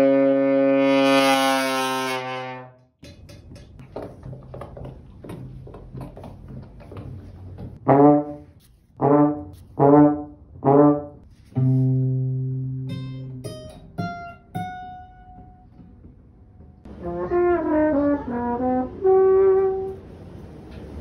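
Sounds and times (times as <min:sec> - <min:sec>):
comic trombone notes: 0:00.0 - 0:02.8, 0:07.8 - 0:13.4, 0:16.9 - 0:20.0.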